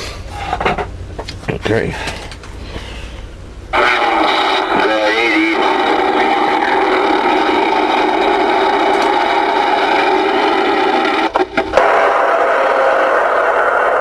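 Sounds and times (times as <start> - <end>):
radio static hiss: 3.7 - 14.0.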